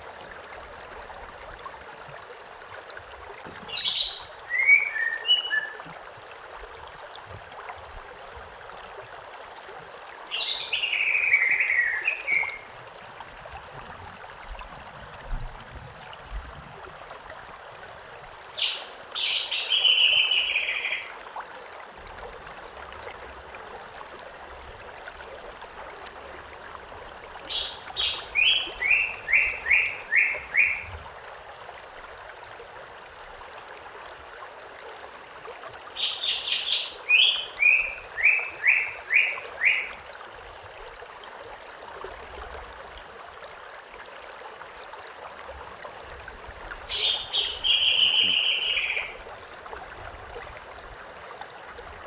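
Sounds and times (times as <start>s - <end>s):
running stream water: 0.0s - 52.0s
songbird singing: 3.7s - 5.9s, 10.3s - 12.7s, 18.5s - 21.2s, 27.5s - 30.9s, 35.9s - 40.0s, 46.9s - 49.2s.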